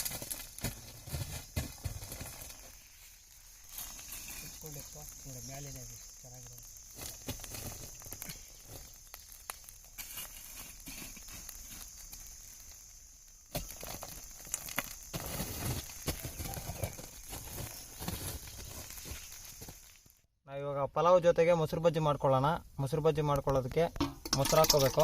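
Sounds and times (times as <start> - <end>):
insects droning: 0.0 - 25.0
utensil clinking in a metal pot: 24.0 - 25.0.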